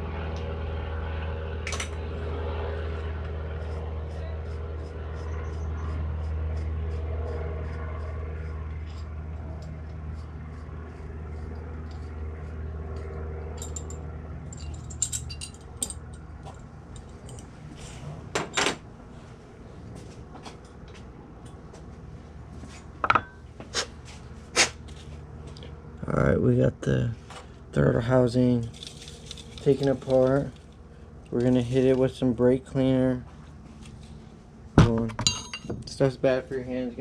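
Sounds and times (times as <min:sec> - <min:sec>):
steady low hum: 0:00.0 - 0:37.0
small metal parts clinking: 0:13.6 - 0:17.5, 0:28.6 - 0:31.4
metal clanks: 0:34.8 - 0:35.9.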